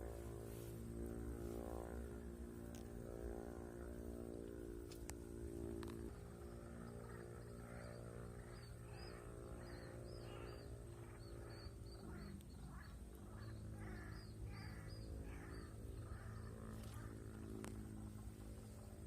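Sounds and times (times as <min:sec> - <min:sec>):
steady low hum: 0:00.0 - 0:19.0
softer lower animal calls: 0:07.1 - 0:17.3.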